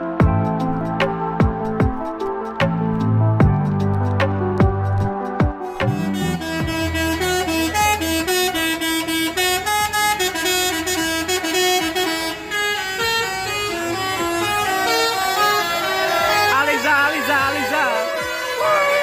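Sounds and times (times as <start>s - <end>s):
musical air horn melody: 5.0s - 19.0s.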